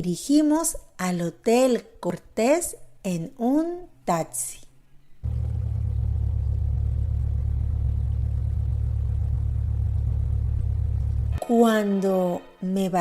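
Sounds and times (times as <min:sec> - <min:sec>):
low car engine drone: 0:05.2 - 0:11.4.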